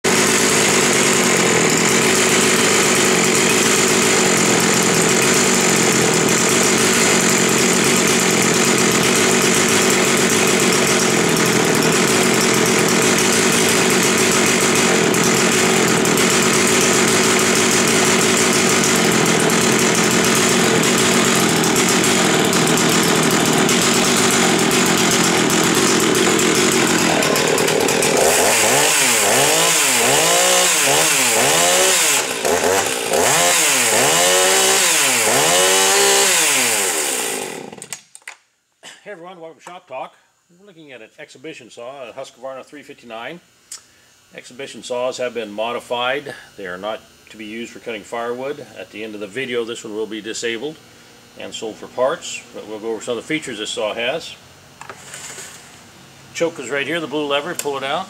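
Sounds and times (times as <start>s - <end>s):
chainsaw running at high speed: 0.0s - 38.0s, 56.4s - 58.0s.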